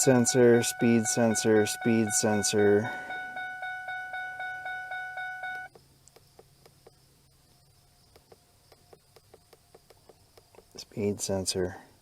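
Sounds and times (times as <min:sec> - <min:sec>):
rapid electronic warning beeps: 0:00.0 - 0:05.7
faint ticking: 0:00.0 - 0:07.0.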